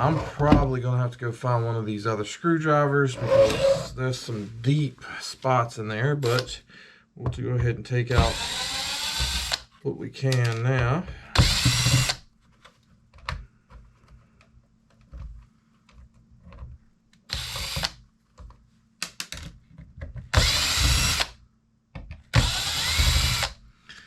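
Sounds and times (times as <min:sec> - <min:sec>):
power screwdriver running: 0:08.2 - 0:09.6, 0:11.4 - 0:12.2, 0:17.3 - 0:18.0, 0:20.4 - 0:21.3, 0:22.4 - 0:23.6
plastic parts clicking and tapping: 0:10.3 - 0:20.9.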